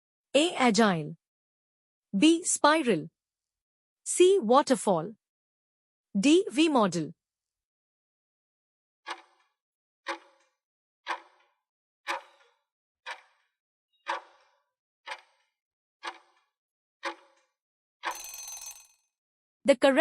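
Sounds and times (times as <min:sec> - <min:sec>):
clock ticking: 0:09.1 - 0:09.4, 0:10.1 - 0:10.4, 0:11.1 - 0:11.4, 0:12.1 - 0:13.4, 0:14.1 - 0:14.5, 0:15.1 - 0:16.4, 0:17.0 - 0:17.2.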